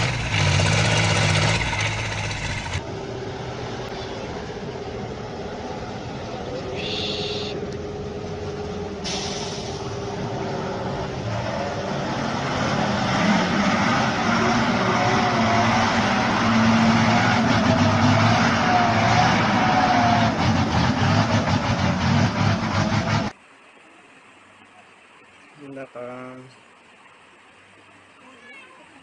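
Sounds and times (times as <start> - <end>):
vehicle engine running: 0.0 - 5.4.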